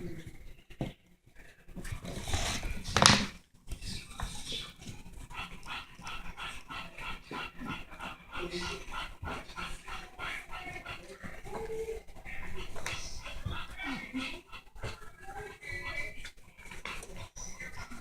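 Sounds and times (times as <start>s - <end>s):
dog panting: 4.0s - 18.0s.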